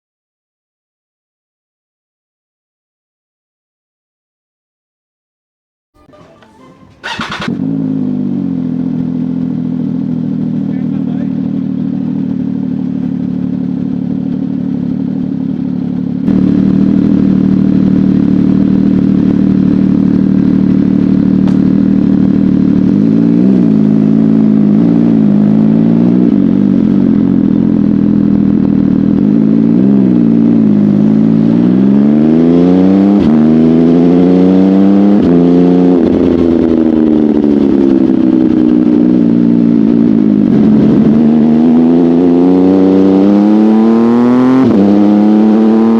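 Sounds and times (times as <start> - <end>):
motorcycle engine revving: 6.0 - 45.9.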